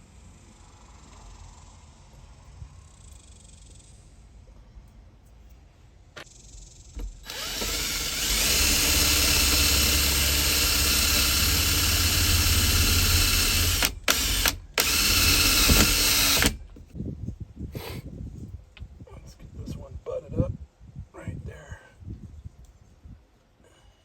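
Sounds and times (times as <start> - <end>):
power drill running under load: 7.0 - 16.9.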